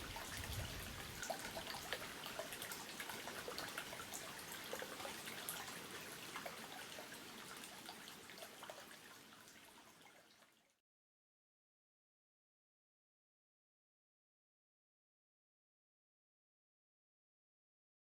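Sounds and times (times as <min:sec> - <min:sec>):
water trickling and dripping: 0:00.0 - 0:10.8.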